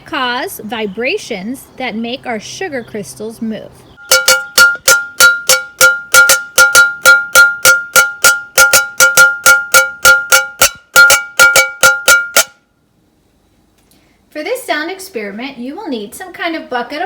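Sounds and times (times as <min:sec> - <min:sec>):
metal spoon drumming on metal lid: 0:04.0 - 0:12.6.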